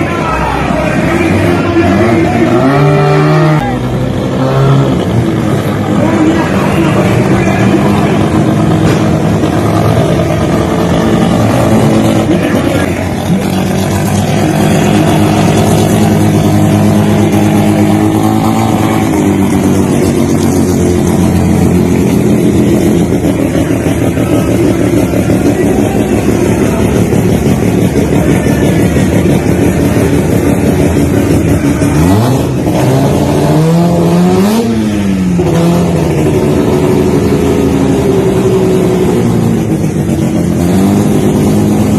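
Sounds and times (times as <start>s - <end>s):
car engine through loud exhaust: 0.0s - 41.9s
engine revving sharply: 0.5s - 27.8s.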